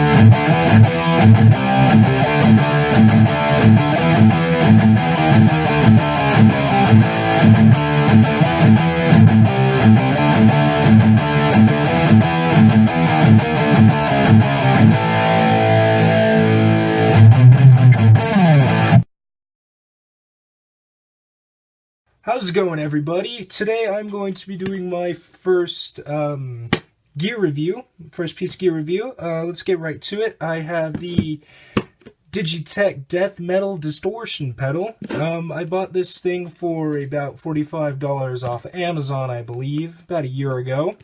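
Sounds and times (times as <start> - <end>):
distorted electric guitar metal riff: 0.0 - 19.0.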